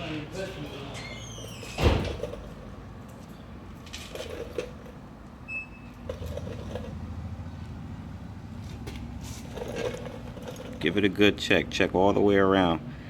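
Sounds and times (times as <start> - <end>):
high squeak: 0.9 - 2.0.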